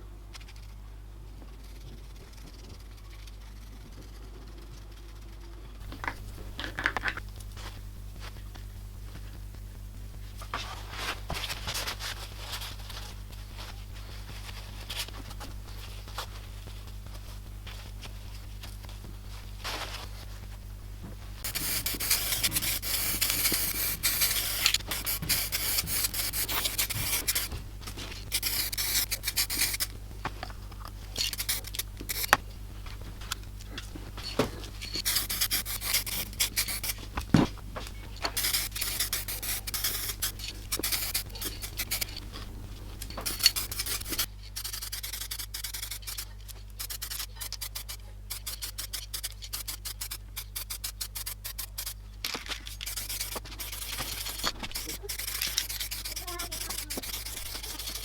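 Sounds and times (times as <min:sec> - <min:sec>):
scraping and rubbing strokes: 0:01.5 - 0:06.4, 0:21.4 - 0:30.0, 0:31.0 - 0:32.4, 0:34.2 - 0:37.2, 0:38.2 - 0:58.0.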